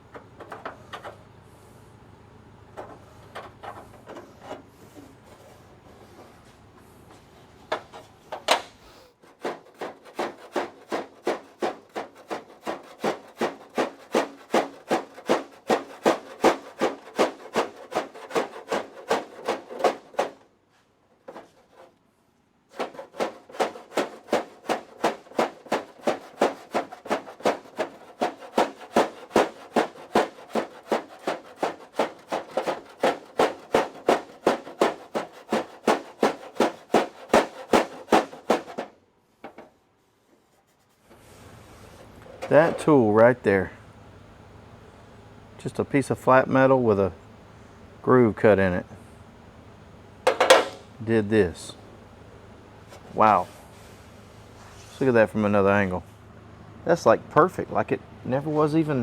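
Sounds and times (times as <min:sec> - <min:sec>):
hammer blows on sheet steel: 0:09.4 - 0:20.4, 0:22.7 - 0:39.7, 0:50.3 - 0:51.8.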